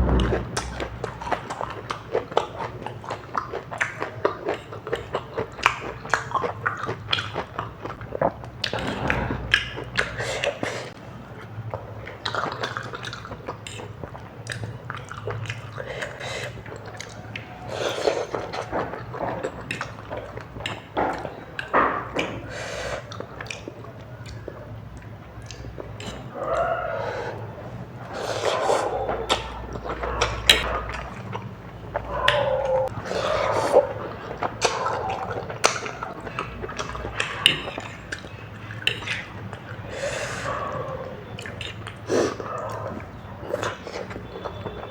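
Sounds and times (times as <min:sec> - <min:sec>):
person chewing and slurping food: 0:00.0 - 0:11.0, 0:25.4 - 0:44.9
sharp mouth clicks: 0:29.1 - 0:30.7, 0:31.9 - 0:32.9.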